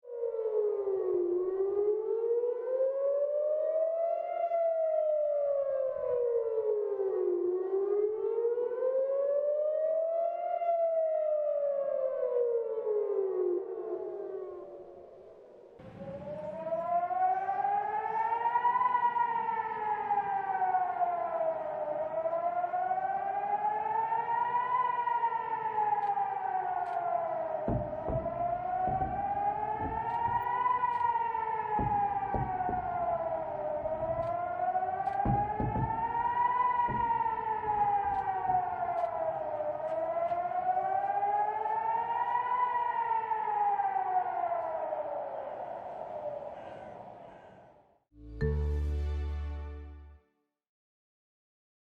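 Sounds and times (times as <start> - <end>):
siren wailing: 0.0 - 47.7
low thumps: 27.7 - 39.4.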